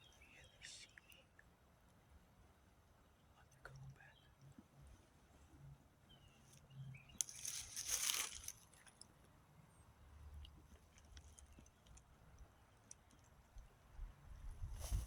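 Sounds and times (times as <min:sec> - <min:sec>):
faint ticks and rustles: 0:00.0 - 0:15.0
close rustling crunch: 0:07.2 - 0:09.0, 0:14.6 - 0:15.0.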